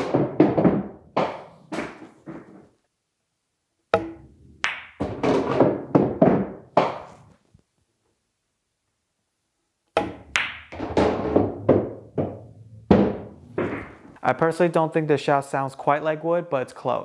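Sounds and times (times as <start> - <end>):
pool balls clacking: 0.0 - 2.7, 3.9 - 7.3, 10.0 - 14.2
cue tip striking cue ball: 4.0 - 7.2, 10.0 - 14.1.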